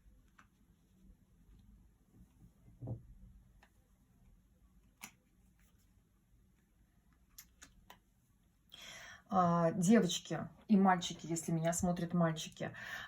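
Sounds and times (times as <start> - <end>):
soft low thump: 2.8 - 3.2.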